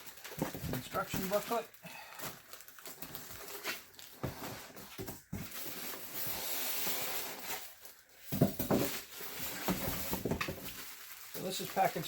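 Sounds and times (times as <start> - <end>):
packing material rustling: 0.0 - 12.0
items knocking in box: 8.2 - 10.9.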